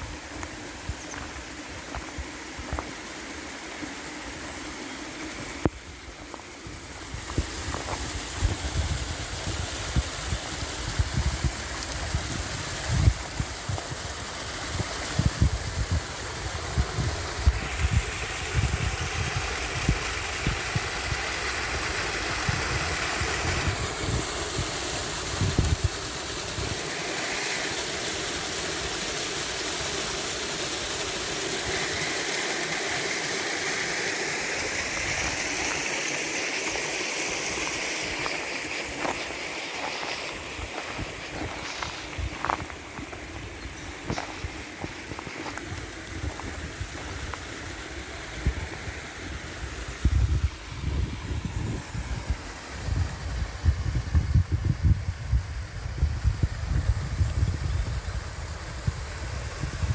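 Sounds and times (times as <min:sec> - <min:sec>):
steady rushing noise: 0:00.0 - 0:59.9
wind buffeting microphone: 0:06.9 - 0:26.8, 0:40.7 - 0:47.3, 0:49.9 - 0:59.9.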